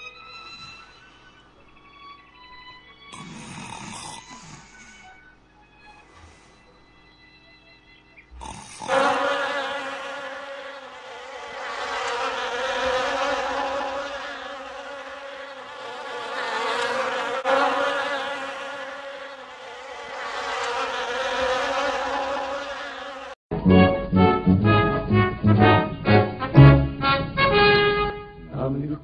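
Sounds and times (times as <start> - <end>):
heavy buzzing snoring: 3.1 - 5.1, 8.3 - 23.4.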